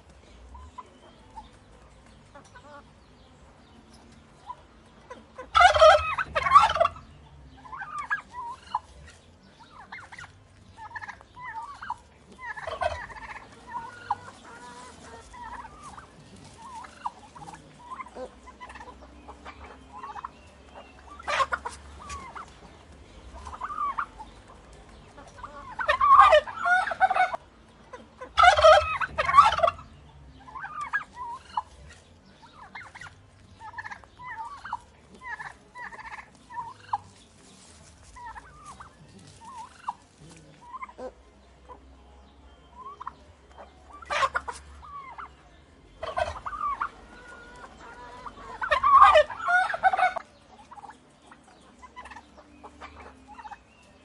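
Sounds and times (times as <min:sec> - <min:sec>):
turkeys gobbling: 0:00.0 - 0:03.0, 0:04.0 - 0:54.0
soft turkey calls: 0:03.9 - 0:54.0.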